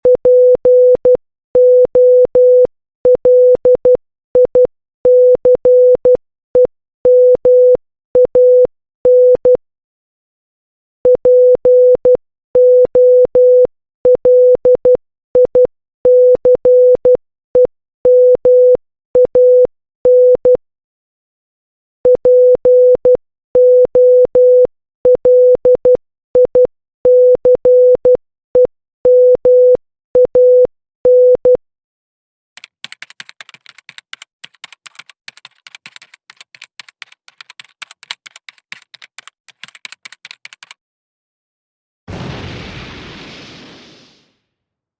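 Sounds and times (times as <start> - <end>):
morse code beeps: 0.0 - 9.6.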